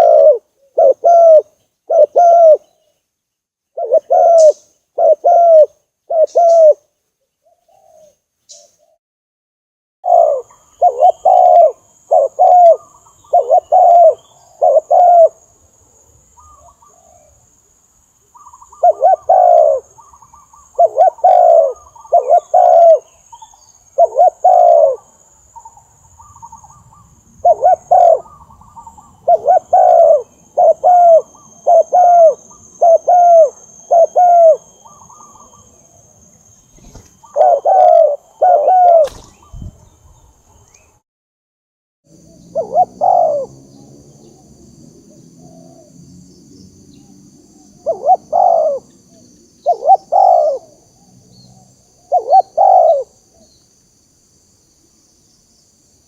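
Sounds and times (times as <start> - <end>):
dove cooing: 0.0 - 2.7, 3.8 - 6.9, 7.5 - 8.2, 10.0 - 15.4, 18.4 - 25.2, 26.2 - 35.8, 36.7 - 39.8, 42.2 - 44.5, 45.3 - 46.0, 47.8 - 51.1, 52.0 - 53.5.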